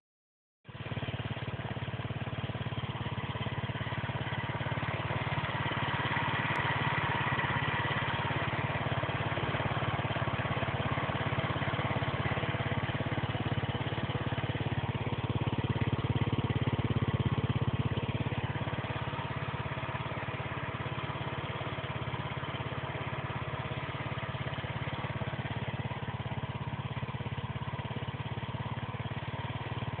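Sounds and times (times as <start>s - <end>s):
scooter engine idling: 0.7s - 30.0s.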